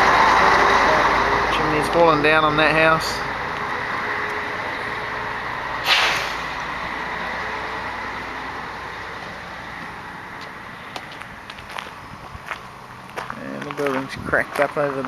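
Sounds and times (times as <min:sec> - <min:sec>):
road vehicle passing: 0:00.0 - 0:15.0
short sharp hiss: 0:05.8 - 0:06.6.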